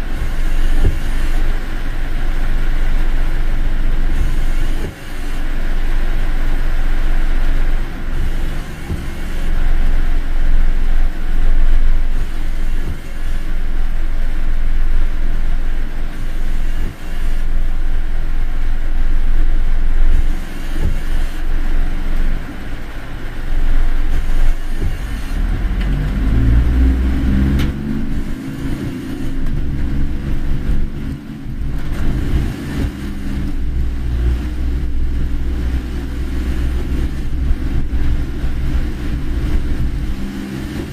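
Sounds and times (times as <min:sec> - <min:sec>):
car road and engine rumble: 0:00.0 - 0:40.9
pitched engine note: 0:25.3 - 0:40.9.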